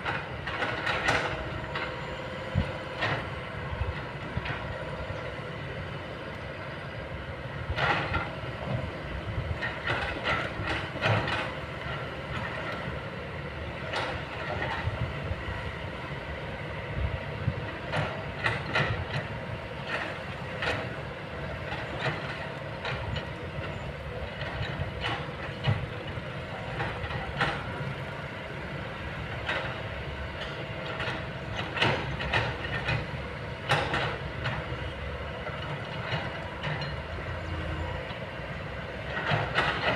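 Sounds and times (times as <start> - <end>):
metallic clanks and squeals: 0.0 - 3.4, 21.6 - 27.8, 29.4 - 39.9
excavator engine drone and whine: 0.0 - 39.9.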